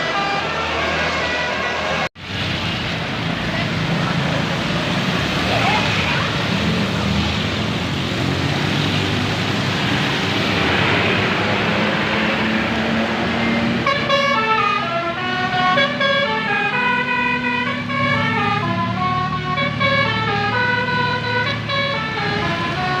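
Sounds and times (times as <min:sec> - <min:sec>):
multi-tone bus horn tune: 0:00.0 - 0:02.0, 0:13.8 - 0:23.0
bus engine low hum: 0:00.0 - 0:23.0.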